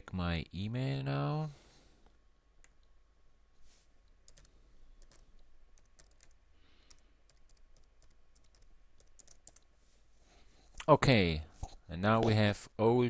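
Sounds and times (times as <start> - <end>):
low steady hum: 0.0 - 13.0
keyboard and mouse clicking: 2.6 - 2.9, 4.2 - 9.7.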